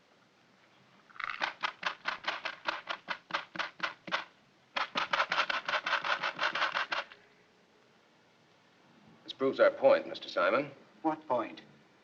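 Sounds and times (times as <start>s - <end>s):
metal tacks ticking on paper: 1.3s - 7.2s.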